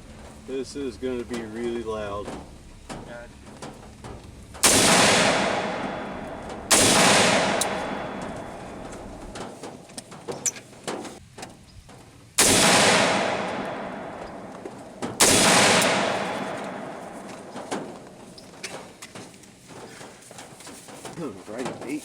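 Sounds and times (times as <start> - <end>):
rifle shots with rolling echo: 4.6 - 9.9, 12.4 - 18.4.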